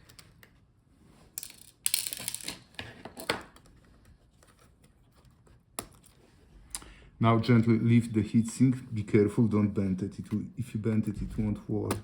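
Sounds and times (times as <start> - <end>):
small parts clicking and rustling: 1.3 - 3.7.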